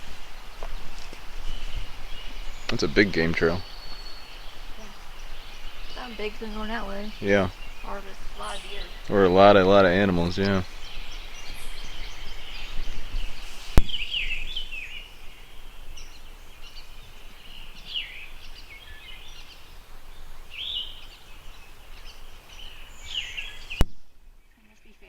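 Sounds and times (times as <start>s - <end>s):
songbirds whistling: 0.0s - 23.8s
faint background hiss: 0.0s - 25.0s.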